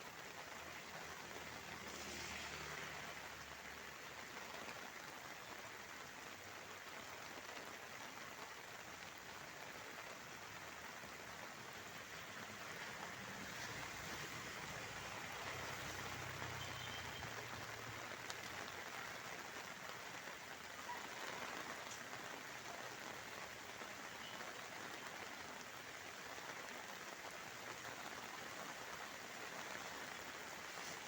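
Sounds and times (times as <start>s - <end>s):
rain falling: 0.0s - 31.0s.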